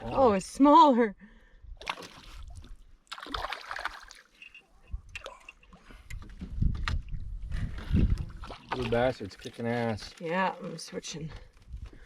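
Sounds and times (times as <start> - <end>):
water splashing at boat: 1.8 - 10.8.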